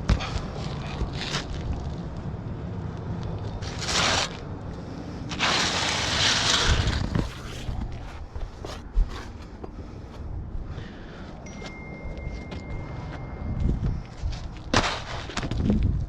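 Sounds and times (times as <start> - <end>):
metal bar scraping under shingles: 3.4 - 9.4, 14.2 - 15.9.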